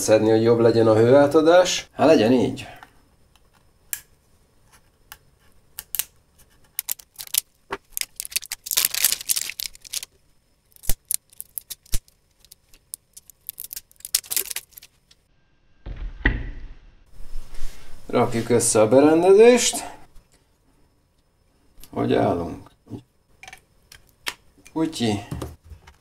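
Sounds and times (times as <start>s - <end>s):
rustling: 6.4s - 10.1s, 10.7s - 15.2s
plastic clicks and rattling: 6.7s - 10.1s, 10.7s - 14.9s.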